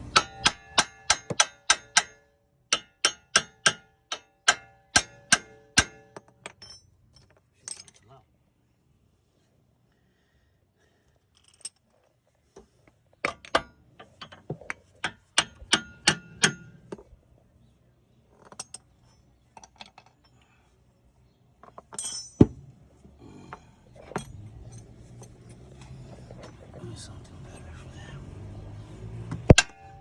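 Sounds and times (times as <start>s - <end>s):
hammer striking metal: 0.0s - 6.8s, 15.0s - 16.8s
light metal taps and clinks: 5.9s - 8.1s, 18.3s - 20.5s, 21.6s - 22.6s, 24.0s - 26.6s.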